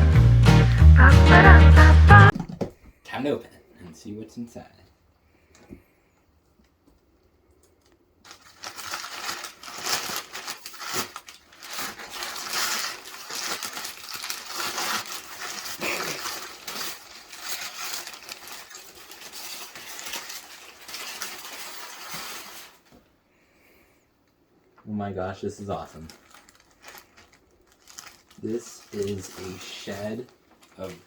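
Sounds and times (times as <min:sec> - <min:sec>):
packaging crinkling and rustling: 0:08.2 - 0:23.1, 0:25.6 - 0:31.0.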